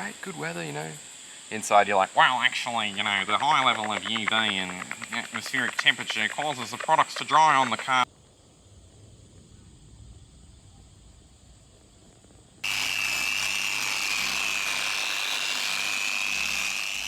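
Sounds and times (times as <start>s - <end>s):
electric polisher whining: 2.3s - 8.0s, 12.6s - 17.0s.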